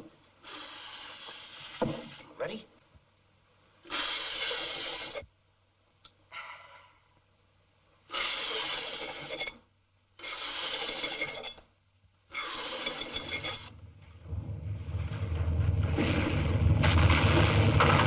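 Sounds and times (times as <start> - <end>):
low rumble: 13.7 - 18.0.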